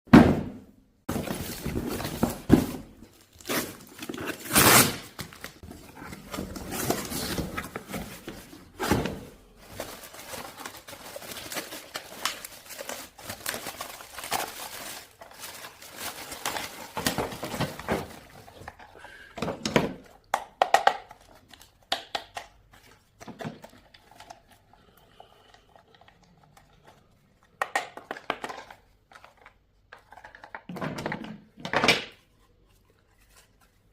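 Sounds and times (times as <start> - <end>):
cardboard and plastic crinkling: 1.1 - 19.0.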